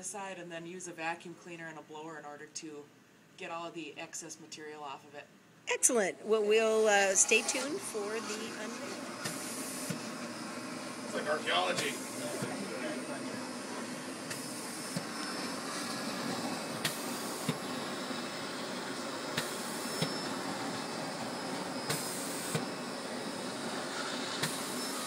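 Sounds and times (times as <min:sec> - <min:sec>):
vacuum sucking powder: 0:06.7 - 0:25.0.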